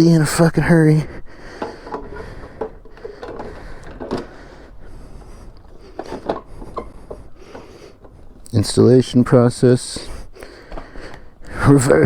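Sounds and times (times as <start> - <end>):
tools clicking and rustling: 1.5 - 8.6.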